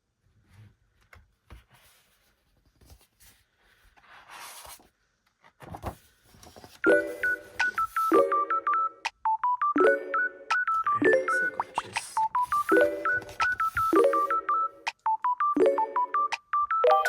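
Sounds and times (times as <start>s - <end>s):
pages rustling: 1.0s - 8.1s, 11.6s - 14.4s
electronic beeping melody: 6.8s - 17.0s.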